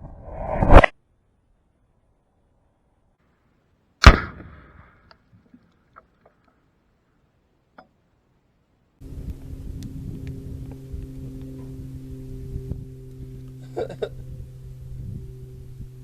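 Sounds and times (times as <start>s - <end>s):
loud explosion blast: 4.0s - 5.1s
rifle shot: 4.0s - 5.1s.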